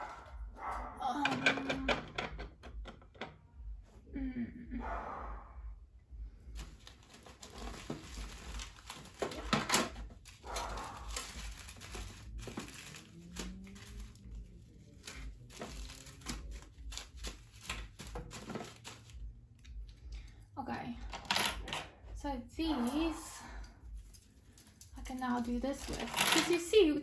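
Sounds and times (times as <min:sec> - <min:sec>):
plastic bags rustling: 0:06.5 - 0:20.0, 0:22.6 - 0:27.0.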